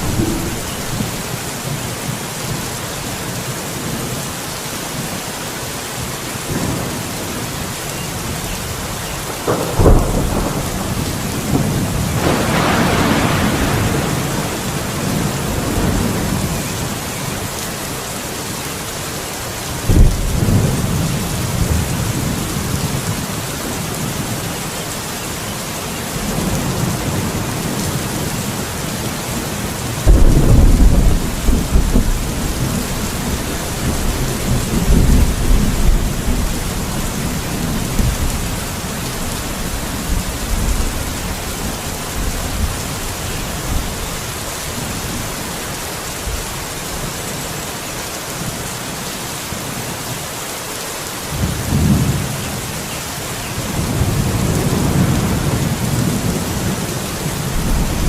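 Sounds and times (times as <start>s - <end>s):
thunder cracks and rumbles: 0.0s - 1.4s, 9.3s - 17.0s, 19.8s - 24.4s, 29.3s - 44.0s, 53.7s - 58.0s
heavy rain: 0.0s - 58.0s.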